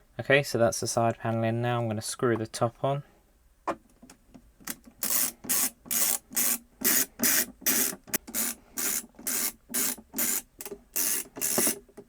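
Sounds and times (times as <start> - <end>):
screw rasping into plastic: 4.6 - 11.8.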